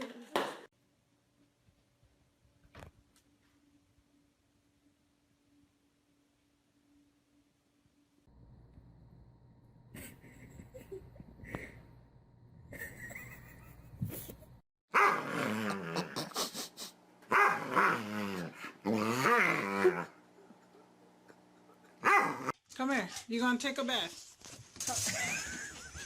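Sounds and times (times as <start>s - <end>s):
dog growling and whining: 15.0s - 16.3s, 17.3s - 20.2s.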